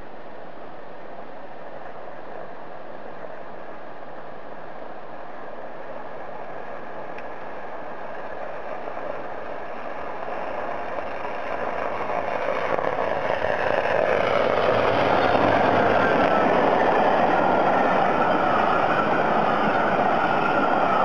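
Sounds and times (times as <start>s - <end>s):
electric locomotive accelerating: 5.3s - 21.0s.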